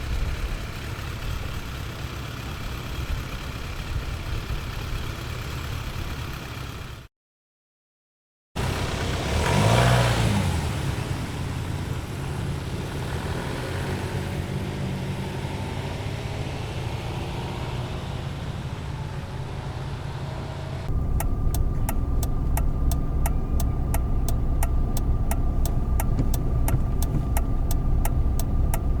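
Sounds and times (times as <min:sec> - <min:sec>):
engine with steady ticking tone: 0:00.0 - 0:07.1, 0:08.6 - 0:29.0
engine revving: 0:08.6 - 0:29.0
car engine running: 0:17.8 - 0:29.0.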